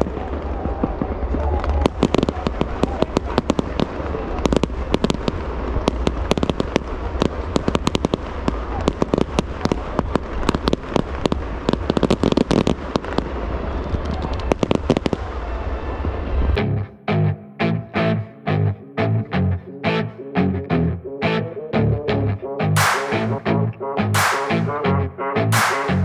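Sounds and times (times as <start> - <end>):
fireworks cracks and bangs: 0.0 - 16.6, 22.8 - 23.4, 24.2 - 24.8, 25.5 - 26.0.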